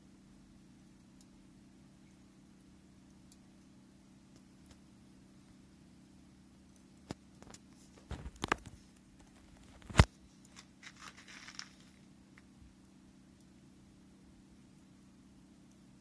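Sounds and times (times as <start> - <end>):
bonfire crackling and snapping: 6.6 - 12.6.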